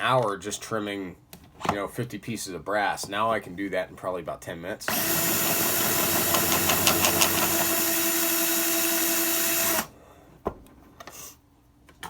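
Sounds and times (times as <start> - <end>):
drill motor whine: 4.9 - 9.9.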